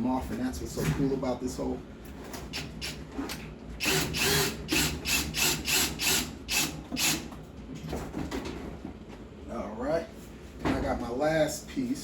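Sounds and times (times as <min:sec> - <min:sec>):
power drill driving screw: 0:03.8 - 0:07.3.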